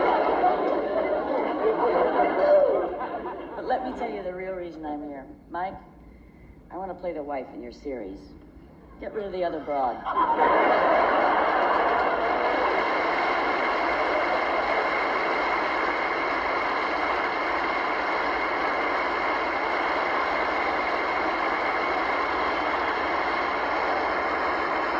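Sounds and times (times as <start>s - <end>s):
audience applauding: 0.0s - 3.6s, 10.1s - 24.9s.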